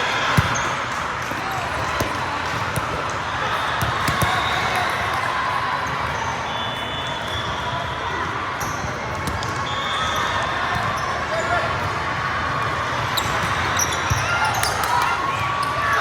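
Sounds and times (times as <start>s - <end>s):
hubbub of voices: 0.0s - 16.0s
volleyballs bouncing and hit: 0.3s - 4.8s.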